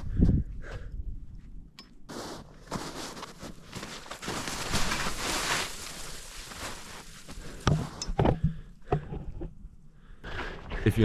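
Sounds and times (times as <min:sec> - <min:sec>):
footsteps crunching in icy snow: 0:02.1 - 0:07.7.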